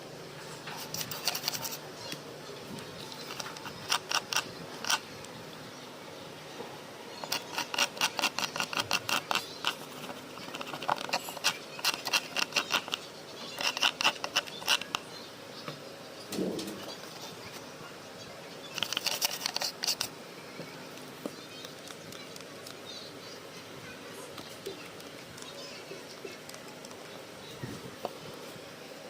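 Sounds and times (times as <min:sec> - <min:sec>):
small clicks and scratches: 0:00.6 - 0:05.4, 0:07.2 - 0:15.8, 0:18.7 - 0:20.1, 0:20.9 - 0:23.0, 0:24.3 - 0:28.5.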